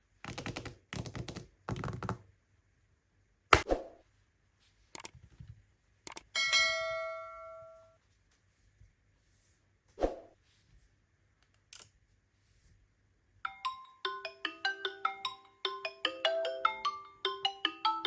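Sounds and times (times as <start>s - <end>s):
bell-like ding: 6.4s - 8.0s.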